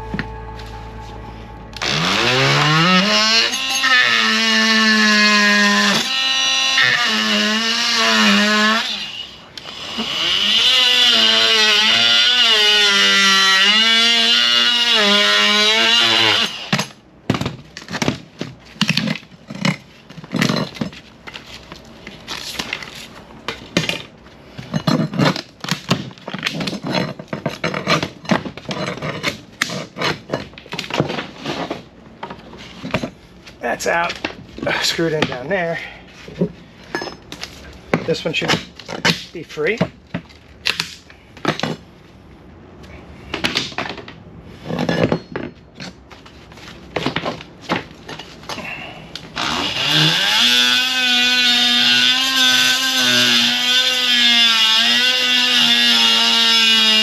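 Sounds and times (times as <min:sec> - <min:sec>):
oscillating multi-tool cutting wood: 0:01.7 - 0:17.0, 0:49.2 - 0:57.0.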